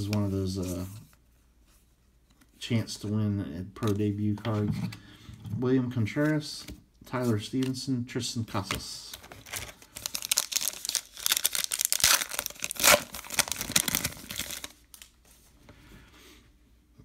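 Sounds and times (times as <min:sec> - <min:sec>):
wrapper crinkling and tearing: 0:09.2 - 0:15.2.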